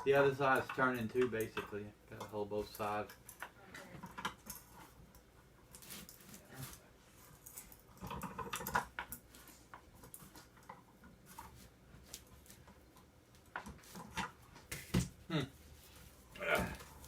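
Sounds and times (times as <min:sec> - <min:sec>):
metal lamp parts clicking: 0:00.0 - 0:05.8.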